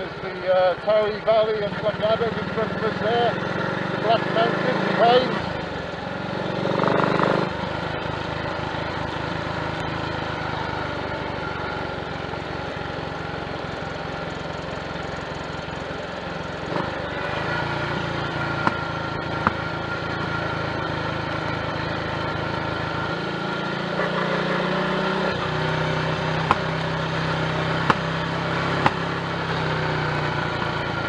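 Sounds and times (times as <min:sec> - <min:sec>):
motorcycle engine running: 0:00.0 - 0:31.0
road and wind noise: 0:00.0 - 0:31.0
short sharp engine pops: 0:18.0 - 0:19.7, 0:26.3 - 0:27.0, 0:27.7 - 0:29.4.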